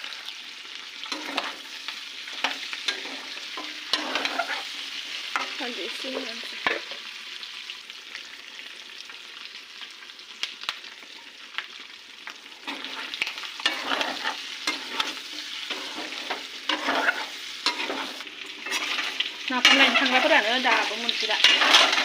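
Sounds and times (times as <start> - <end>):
food sizzling in a pan: 0.0 - 22.0
utensil scraping a pan: 1.1 - 6.9, 12.6 - 22.0.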